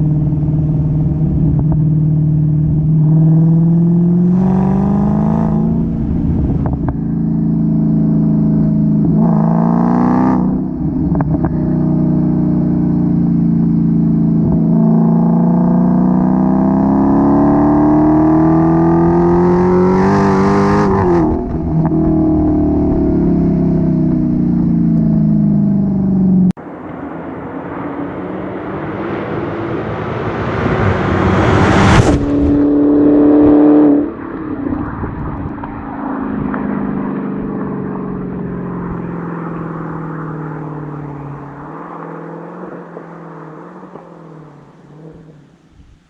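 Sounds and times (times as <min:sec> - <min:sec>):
car engine passing by: 0:26.6 - 0:45.7.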